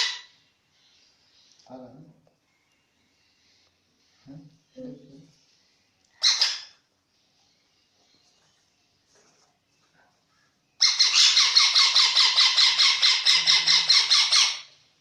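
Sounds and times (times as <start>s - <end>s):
parrot chick grating squawks: 0.0s - 0.4s, 6.2s - 6.8s, 10.8s - 14.8s.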